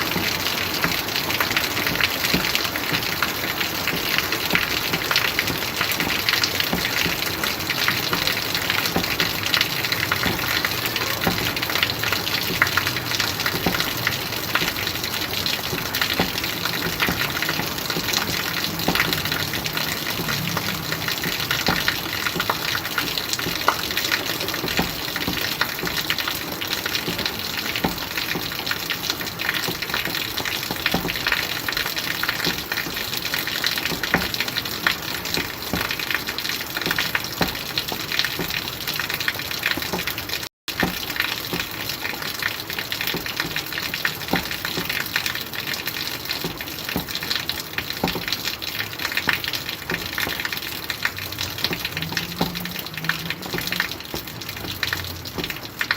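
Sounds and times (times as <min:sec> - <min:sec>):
heavy rain: 0:00.0 - 0:55.9.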